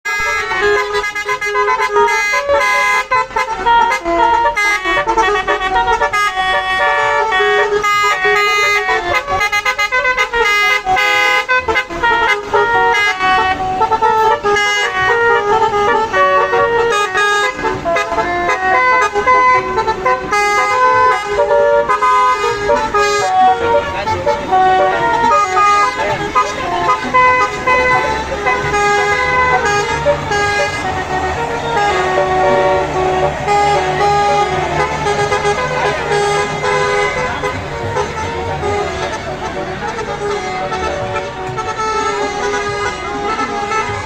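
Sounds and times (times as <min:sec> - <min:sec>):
musical bus air horns: 0:00.0 - 0:44.0.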